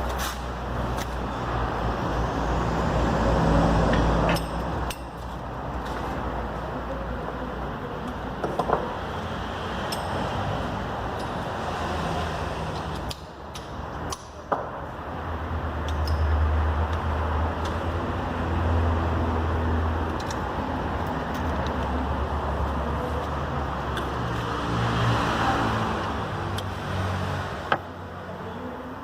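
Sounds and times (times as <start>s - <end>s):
hand tools clicking and knocking: 3.9s - 6.0s.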